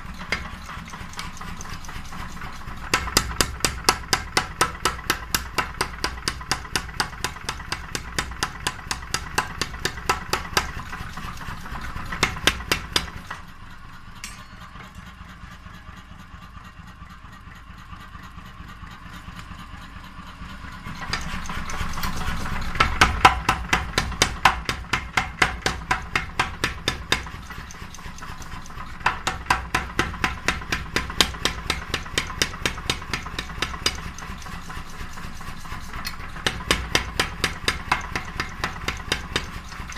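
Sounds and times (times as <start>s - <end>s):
low steady hum: 9.4s - 16.1s.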